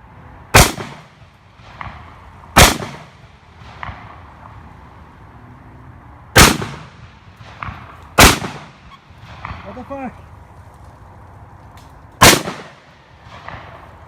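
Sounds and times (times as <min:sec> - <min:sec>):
gunshots echoing: 0:00.6 - 0:04.2, 0:06.4 - 0:10.0, 0:12.2 - 0:13.8.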